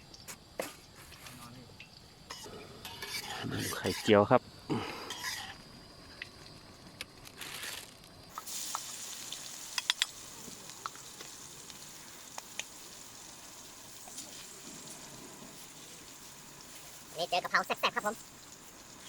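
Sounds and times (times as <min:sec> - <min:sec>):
egg sizzling in hot oil: 0:01.8 - 0:04.2, 0:05.1 - 0:06.5, 0:08.3 - 0:19.0.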